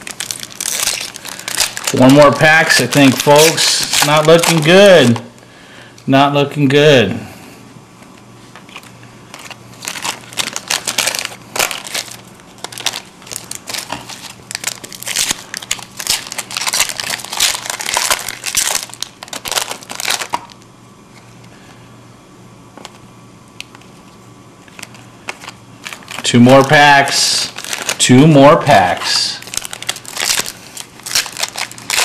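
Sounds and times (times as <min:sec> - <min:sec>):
wrapper tearing and crinkling: 0:00.0 - 0:05.2, 0:08.6 - 0:20.6, 0:23.6 - 0:28.1, 0:28.9 - 0:32.0.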